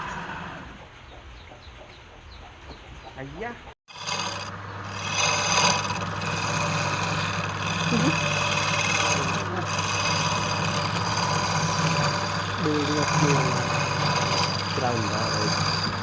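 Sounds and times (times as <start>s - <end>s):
tool scraping spinning wood: 3.9s - 16.0s
wood lathe motor hum: 3.9s - 16.0s.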